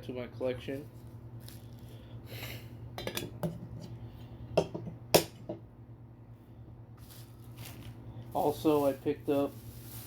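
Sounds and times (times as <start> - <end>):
packaging rustle: 0.8 - 2.0, 7.0 - 10.0.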